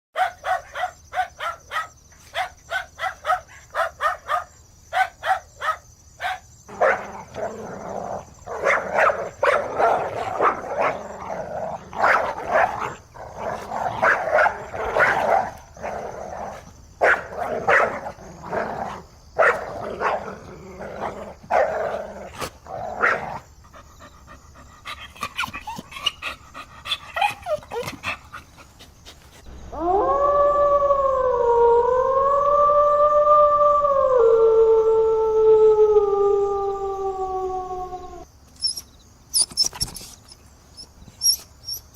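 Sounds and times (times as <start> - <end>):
dog barking: 0.2 - 7.2, 8.5 - 11.1, 12.0 - 13.0, 14.0 - 15.6, 17.0 - 18.0, 19.4 - 20.4
dog yelping: 24.9 - 28.3, 38.6 - 40.1, 40.8 - 41.9.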